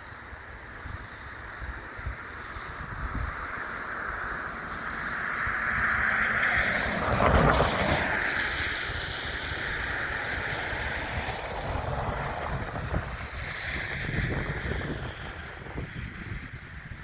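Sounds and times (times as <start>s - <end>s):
wind buffeting microphone: 0.7s - 17.0s
train passing: 3.8s - 16.9s.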